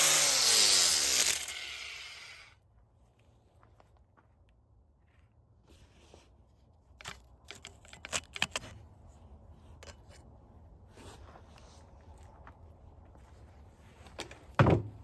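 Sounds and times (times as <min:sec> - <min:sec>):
tools clicking and knocking: 0:07.0 - 0:08.8, 0:09.8 - 0:10.2.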